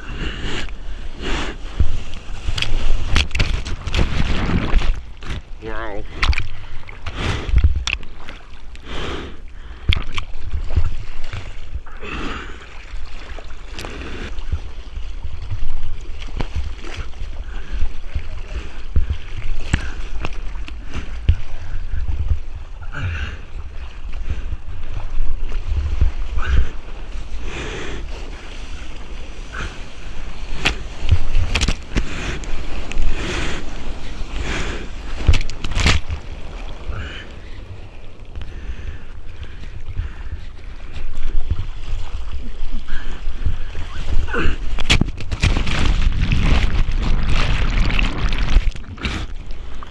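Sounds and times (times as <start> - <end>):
low rumble of surf: 0.0 - 49.9
seawater sloshing and splashing: 0.7 - 8.8, 9.6 - 49.9.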